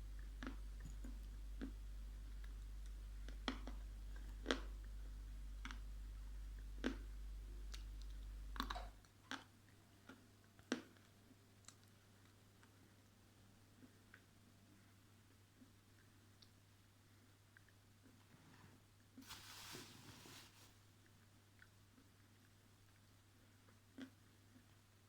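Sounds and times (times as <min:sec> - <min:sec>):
low hum: 0:00.0 - 0:09.0.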